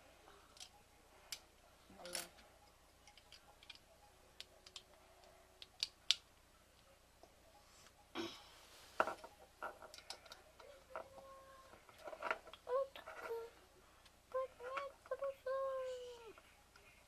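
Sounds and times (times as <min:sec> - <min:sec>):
small plastic pieces clicking: 0:03.0 - 0:03.8, 0:04.4 - 0:06.2, 0:09.7 - 0:11.2.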